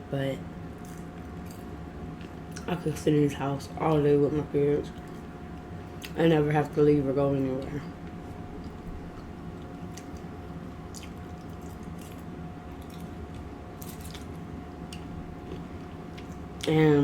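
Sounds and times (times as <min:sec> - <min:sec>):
faint steady hum: 0:00.0 - 0:17.0
person chewing food: 0:08.0 - 0:16.7.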